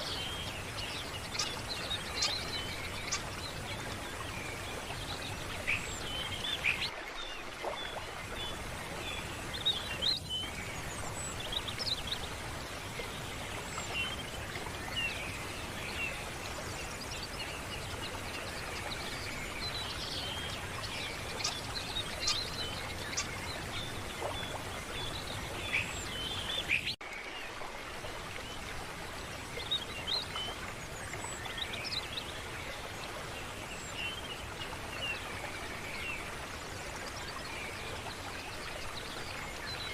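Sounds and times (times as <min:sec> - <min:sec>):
small birds chirping: 0:00.0 - 0:06.9, 0:13.0 - 0:27.0.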